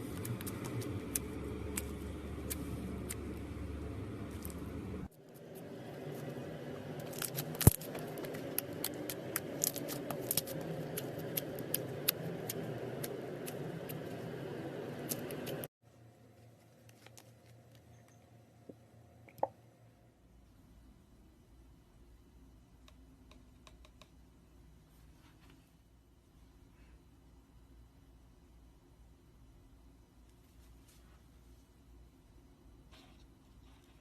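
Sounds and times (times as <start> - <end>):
slime squishing: 0.0 - 14.1.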